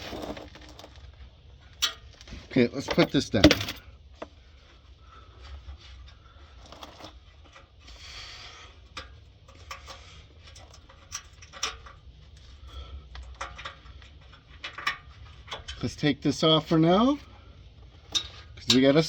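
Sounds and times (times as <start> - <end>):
objects clicking and knocking: 2.9 - 3.8.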